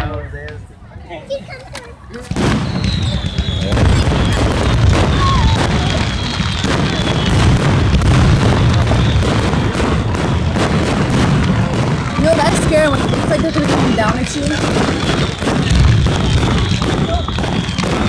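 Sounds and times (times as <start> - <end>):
fireworks booms and crackling bangs: 2.2 - 18.0
faint falling whistle: 2.5 - 7.3, 16.3 - 18.0.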